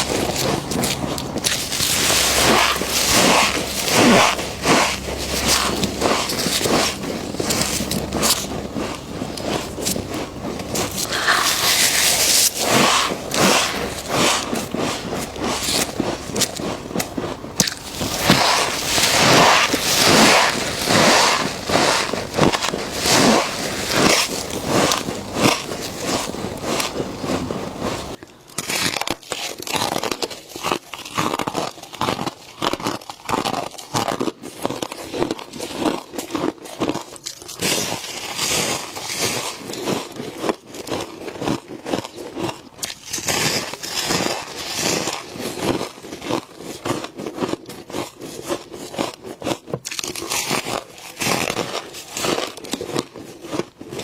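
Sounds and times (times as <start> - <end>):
background hum: 0.0 - 28.2
frost crunching when chewed: 0.0 - 54.0.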